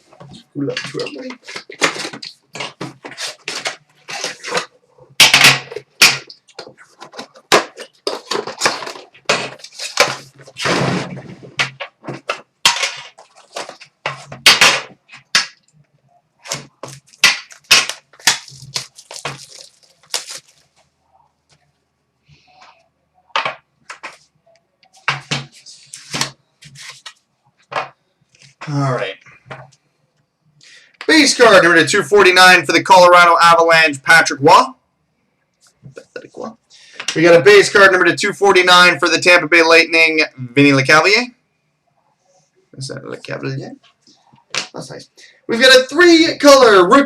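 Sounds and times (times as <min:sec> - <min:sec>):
plastic wrap crackling and ripping: 0:16.4 - 0:20.8.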